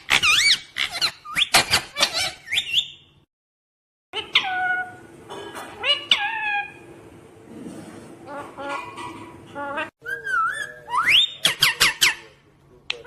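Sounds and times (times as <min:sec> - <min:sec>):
parrot chirping: 0:00.0 - 0:03.2, 0:04.2 - 0:05.1, 0:05.8 - 0:06.9, 0:08.3 - 0:13.0.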